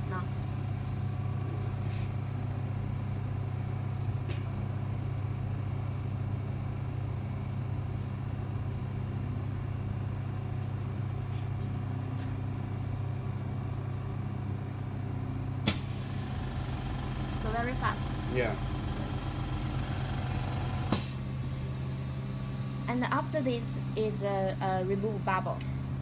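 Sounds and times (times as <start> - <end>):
laminating machine humming: 0.0 - 26.0.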